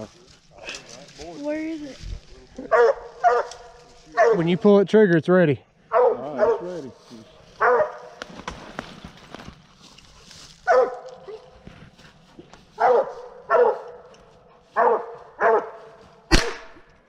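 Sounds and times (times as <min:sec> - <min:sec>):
dog barking: 0:02.7 - 0:04.5, 0:05.9 - 0:06.7, 0:07.6 - 0:08.2, 0:10.6 - 0:11.6, 0:12.8 - 0:14.1, 0:14.7 - 0:15.9
rifle shot: 0:16.3 - 0:17.0.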